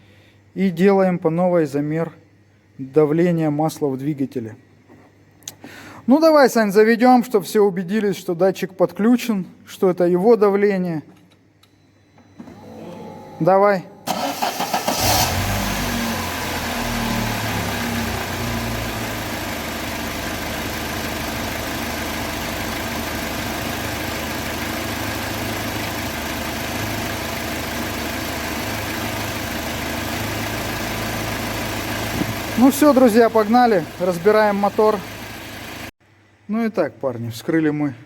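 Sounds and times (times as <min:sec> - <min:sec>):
engine revving and idling: 0:14.1 - 0:35.9.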